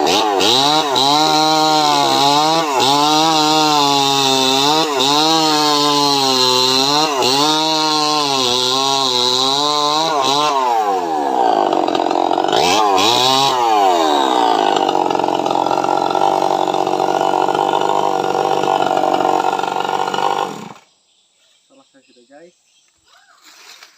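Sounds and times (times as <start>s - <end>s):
chainsaw cutting wood: 0.0s - 20.8s.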